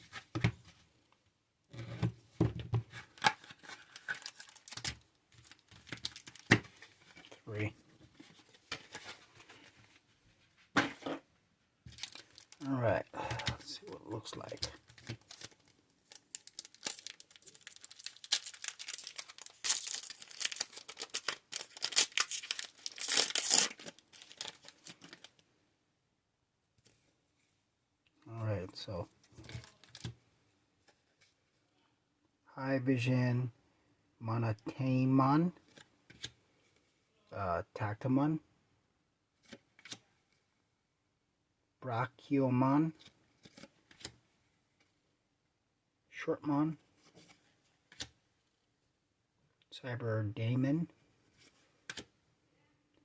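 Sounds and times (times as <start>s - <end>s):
foil packs snipped and crinkling: 14.9s - 25.3s.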